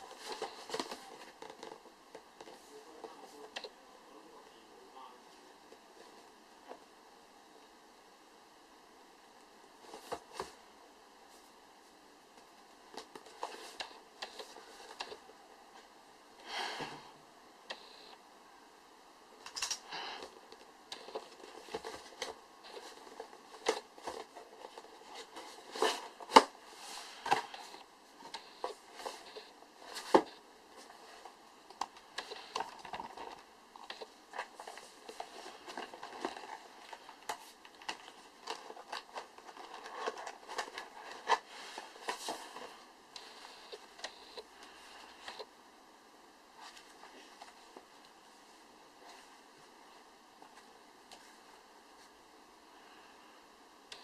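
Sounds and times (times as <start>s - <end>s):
packaging rustling and crinkling: 20.5s - 44.2s.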